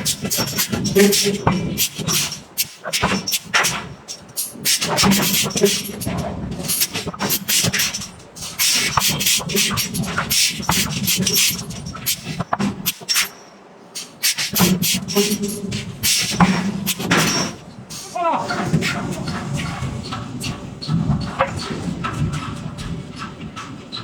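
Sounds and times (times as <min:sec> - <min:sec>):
sharp hissing bursts: 0:00.0 - 0:06.0, 0:06.6 - 0:18.2.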